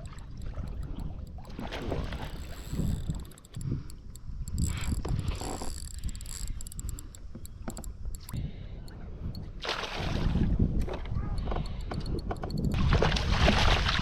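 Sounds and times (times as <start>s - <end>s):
fishing reel clicking: 0.0s - 9.5s, 11.3s - 12.8s
handling and water rumbling: 0.0s - 14.0s.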